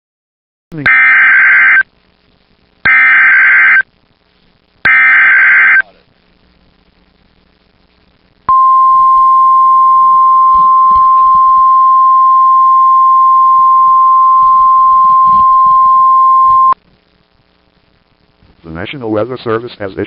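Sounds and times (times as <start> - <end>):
high steady alarm tone: 2.9 - 3.8, 4.9 - 5.8, 8.5 - 16.8.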